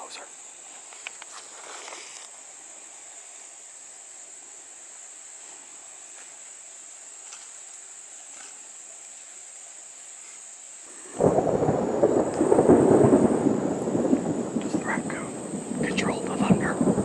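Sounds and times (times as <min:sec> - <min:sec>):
insects droning: 0:00.0 - 0:17.0
faint clicks: 0:12.3 - 0:12.5.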